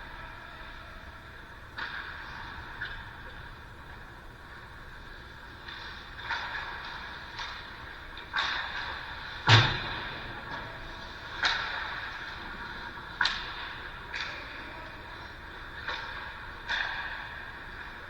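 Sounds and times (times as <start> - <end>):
sharp knocks: 9.5 - 10.8
low thud: 9.5 - 11.1.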